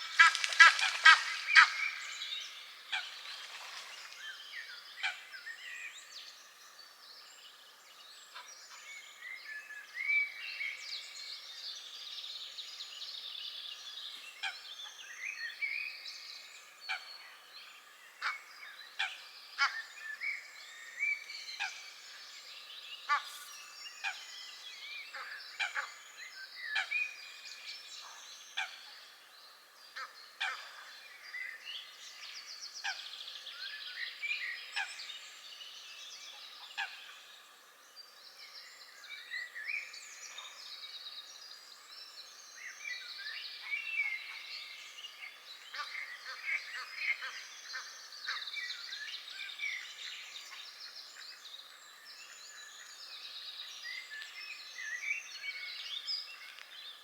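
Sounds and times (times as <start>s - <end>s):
ducks calling: 0.0s - 2.0s
songbirds chirping and trilling: 0.0s - 57.0s.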